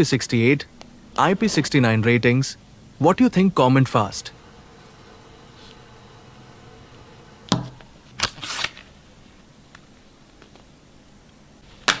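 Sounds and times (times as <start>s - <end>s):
packaging clicks: 7.5s - 10.7s
scraping rustle: 7.7s - 10.7s.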